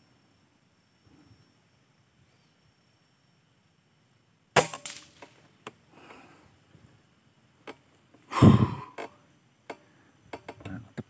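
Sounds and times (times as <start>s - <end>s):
air rifle shot: 4.6s - 5.3s.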